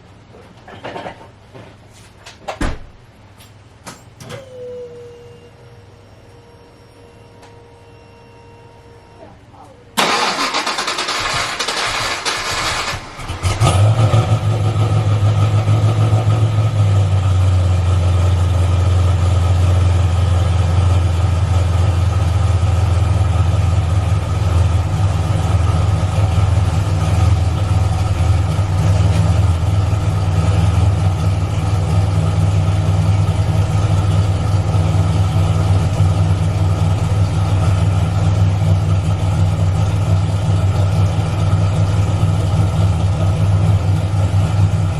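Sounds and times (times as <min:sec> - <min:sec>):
starter cranking: 0:10.0 - 0:13.7
car engine idling: 0:10.0 - 0:44.9.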